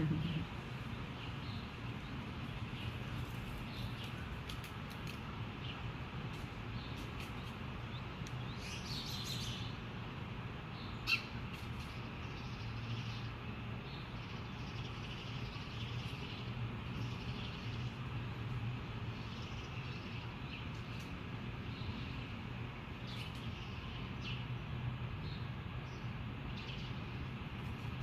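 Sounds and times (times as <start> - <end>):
birds chirping: 0.0 - 4.2, 10.7 - 11.4.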